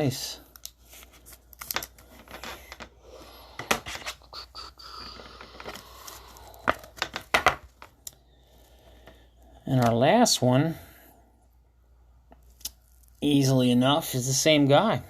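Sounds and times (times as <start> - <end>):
cards and plastic sleeves handled: 0.4 - 8.1.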